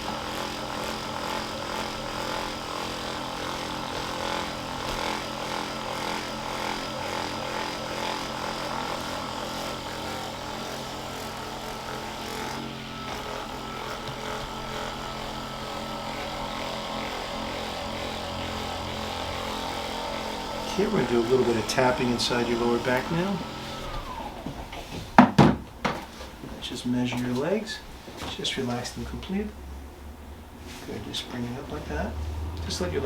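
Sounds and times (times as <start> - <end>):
percussion massager motor hum: 0.0 - 26.0.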